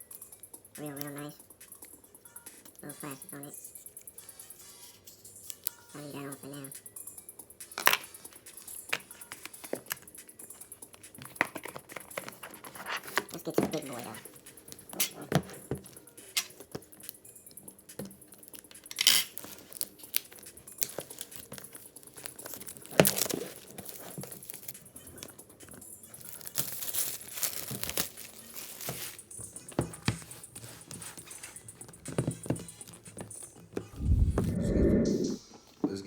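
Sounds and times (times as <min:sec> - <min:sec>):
packaging crinkling and tearing: 0:18.4 - 0:25.3, 0:26.1 - 0:29.2.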